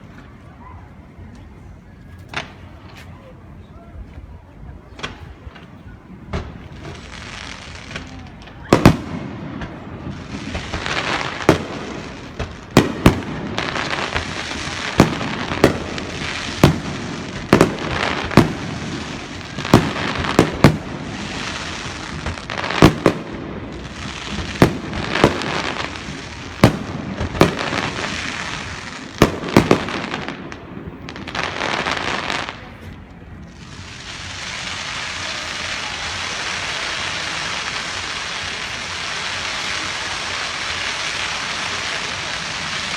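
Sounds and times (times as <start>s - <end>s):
fireworks bangs: 4.9s - 42.9s
fireworks crackle: 4.9s - 42.9s
steady hiss: 5.1s - 42.9s.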